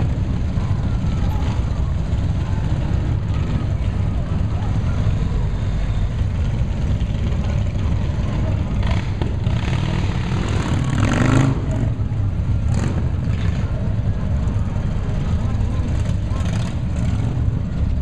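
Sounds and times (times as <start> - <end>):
motorcycle engines rumbling: 0.0 - 18.0
motorcycle engine revving: 6.7 - 13.9.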